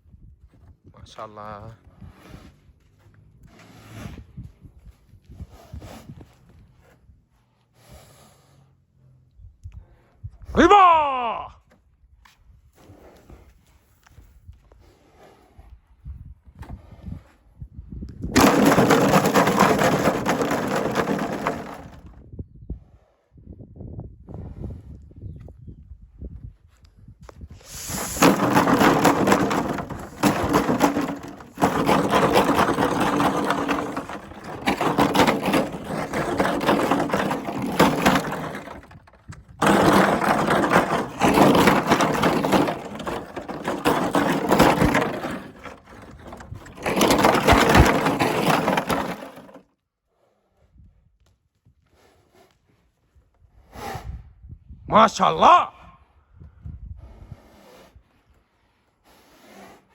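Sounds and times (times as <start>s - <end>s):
horse snorting: 2.0s - 2.7s, 3.4s - 4.3s, 27.7s - 47.2s, 57.0s - 59.9s.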